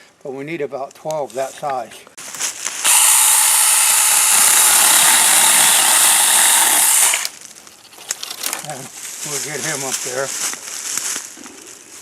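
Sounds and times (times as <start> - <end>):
electric chainsaw cutting wood: 2.8 - 7.3.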